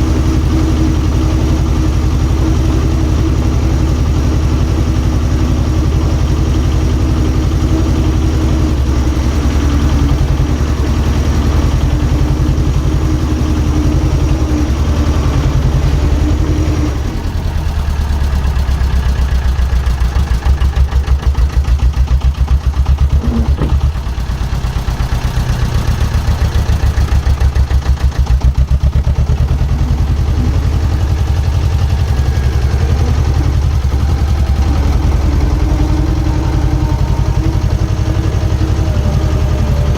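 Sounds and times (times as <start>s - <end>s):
diesel engine running: 0.0s - 39.9s
high-pitched tone: 32.2s - 39.9s.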